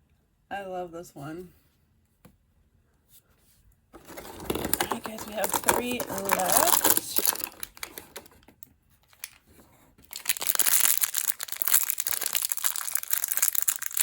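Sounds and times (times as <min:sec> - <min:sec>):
plastic packaging crinkling: 0:04.0 - 0:14.0.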